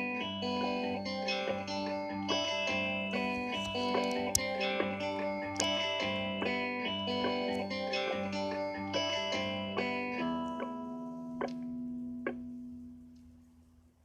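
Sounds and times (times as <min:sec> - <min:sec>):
plucked guitar with effects: 0:00.0 - 0:13.3.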